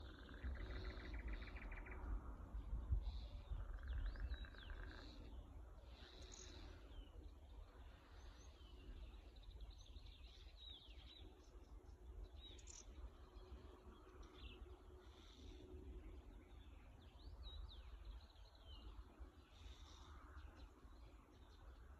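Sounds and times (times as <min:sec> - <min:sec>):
birds chirping and calling: 0:00.0 - 0:02.2, 0:03.0 - 0:11.1.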